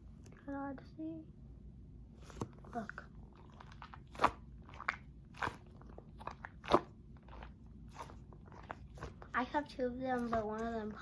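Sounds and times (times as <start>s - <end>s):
squishy stress ball crackling: 2.3s - 11.0s.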